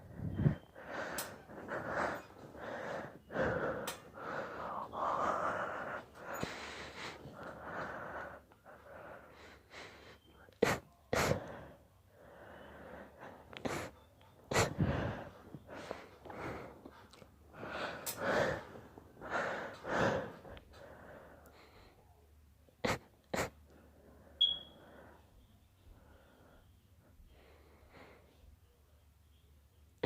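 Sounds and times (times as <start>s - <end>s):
gasping wheezy breaths: 0.0s - 22.1s.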